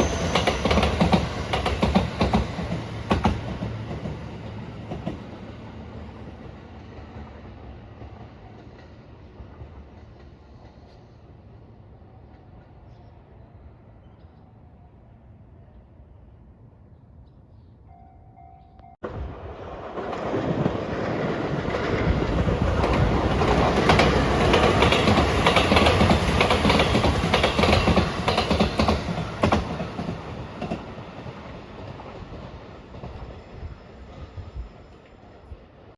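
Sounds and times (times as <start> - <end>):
train passing: 0.0 - 17.2, 17.8 - 35.9
faint tone: 17.8 - 19.0
wheels clacking over rail joints: 19.9 - 33.3.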